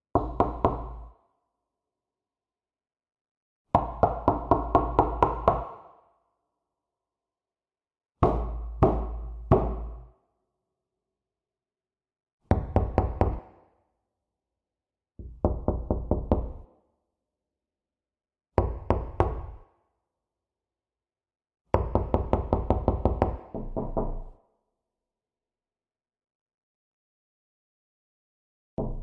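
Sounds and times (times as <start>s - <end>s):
knocking on a door: 8.2s - 10.0s, 12.5s - 13.6s, 15.2s - 16.6s, 21.7s - 24.2s.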